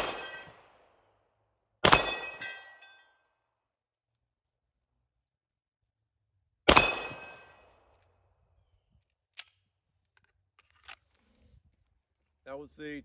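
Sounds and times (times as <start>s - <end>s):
steel target plate ringing: 0.0s - 0.6s, 1.9s - 3.1s
pistol shot: 0.0s - 0.8s, 1.8s - 2.4s, 6.7s - 7.7s.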